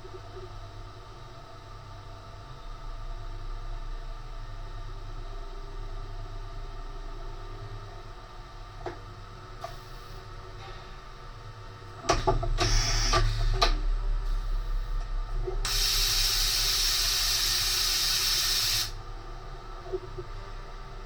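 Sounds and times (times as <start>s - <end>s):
machine low hum: 0.0s - 21.0s
compressed air hissing: 12.6s - 13.4s, 15.7s - 19.0s.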